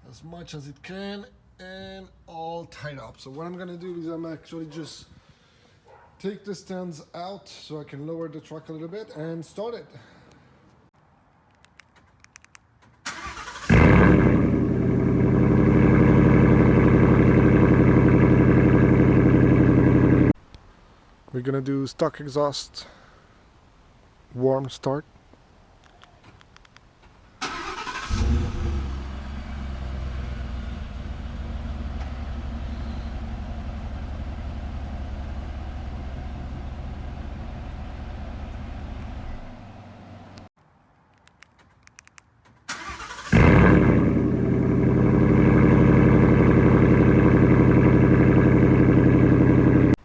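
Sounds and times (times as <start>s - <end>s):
engine cranking: 13.1s - 15.0s, 27.4s - 28.4s, 42.6s - 44.7s
truck engine idling: 13.2s - 20.3s, 42.8s - 50.0s.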